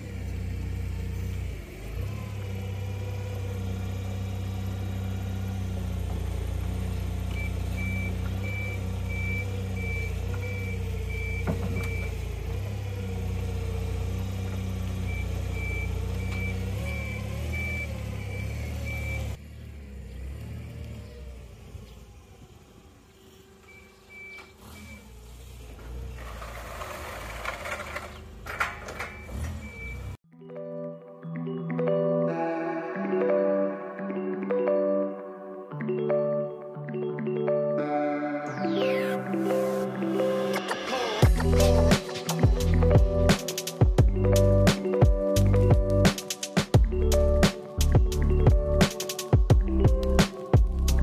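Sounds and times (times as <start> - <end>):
reversing alarm beeping: 7.3 - 12.2, 15.0 - 19.4, 23.6 - 25.1, 29.0 - 30.2.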